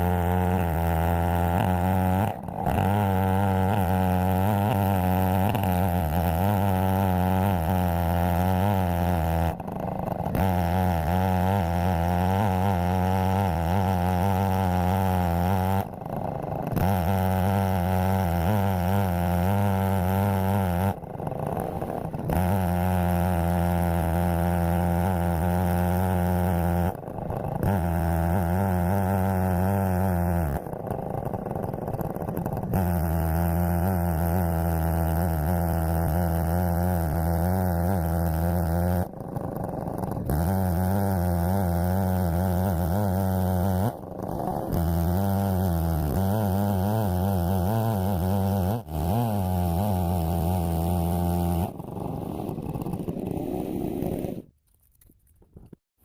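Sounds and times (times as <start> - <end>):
chainsaw cutting log: 0.0 - 54.7.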